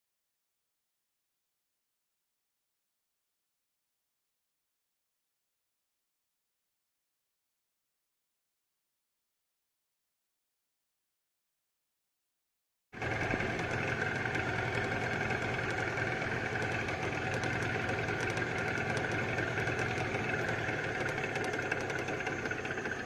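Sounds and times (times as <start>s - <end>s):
outboard motor running: 13.0s - 23.0s.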